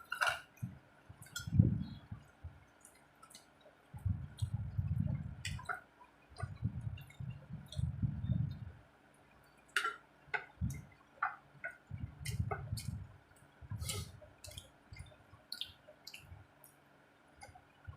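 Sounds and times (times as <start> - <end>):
chewing food: 0.0 - 8.6, 9.6 - 16.8
dull low thumps: 0.6 - 2.6, 4.0 - 5.7, 6.4 - 8.8, 10.4 - 10.9, 11.8 - 14.0.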